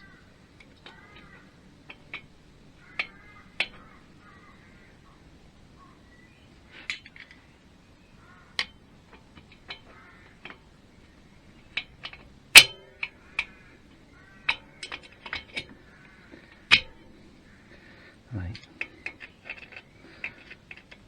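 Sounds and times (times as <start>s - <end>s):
metal tools clinking and tapping: 0.6s - 4.0s, 8.6s - 10.7s, 11.6s - 13.6s, 14.4s - 17.3s, 18.5s - 21.0s
sharp metal clank: 12.0s - 13.5s.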